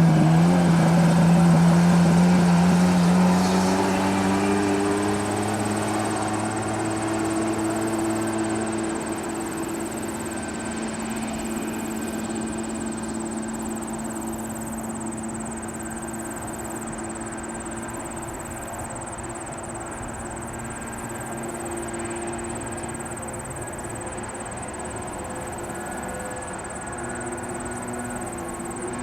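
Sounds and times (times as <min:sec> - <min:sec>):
jet ski engine running: 0:00.0 - 0:25.7.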